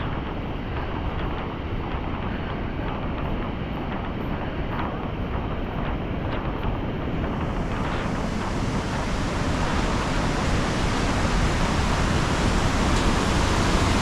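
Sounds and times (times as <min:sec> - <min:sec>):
waterfall rushing: 0:07.3 - 0:14.0.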